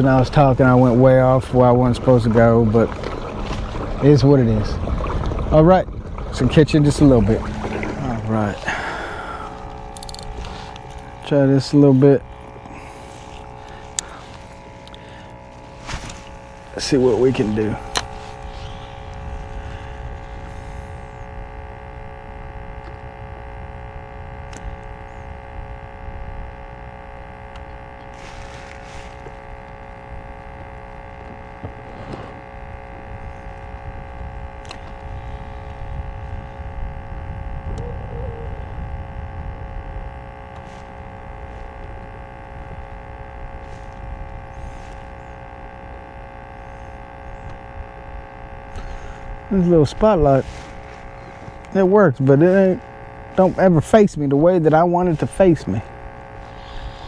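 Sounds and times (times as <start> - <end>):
water: 0.0 - 23.2
electric motor whine: 0.0 - 57.0
wind rumble: 0.2 - 11.3, 32.4 - 41.2.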